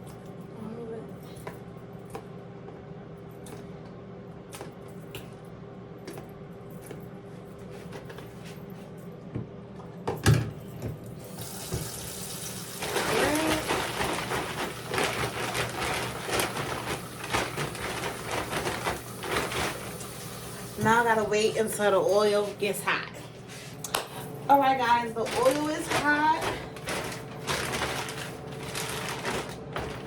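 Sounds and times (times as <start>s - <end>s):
tap water running into sink: 11.3s - 13.0s.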